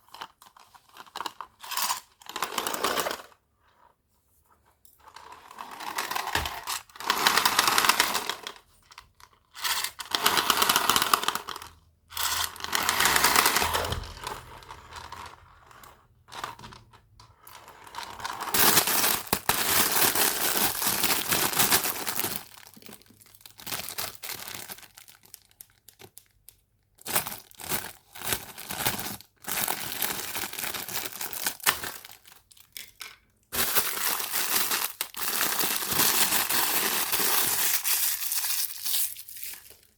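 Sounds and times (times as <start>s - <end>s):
packaging crinkling and tearing: 18.6s - 32.7s, 33.6s - 39.9s.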